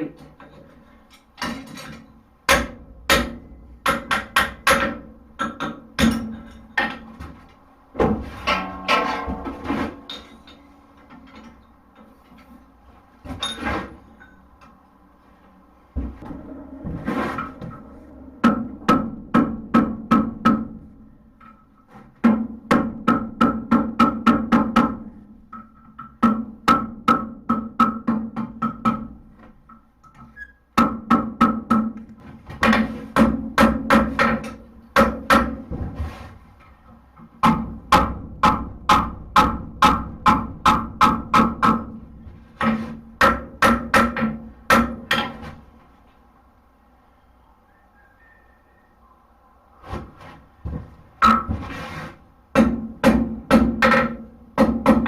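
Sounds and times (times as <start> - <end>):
hammer striking steel on anvil: 8.4 - 11.7.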